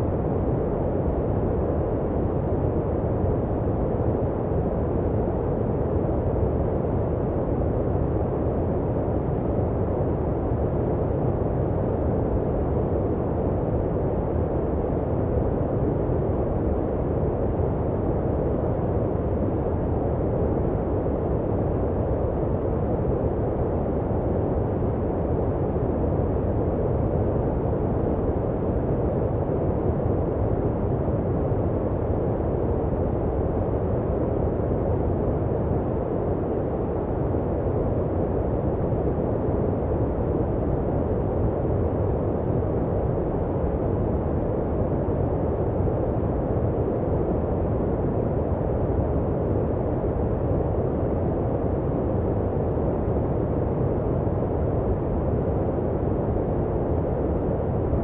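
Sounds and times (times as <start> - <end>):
deep muffled white noise: 0.0 - 58.0.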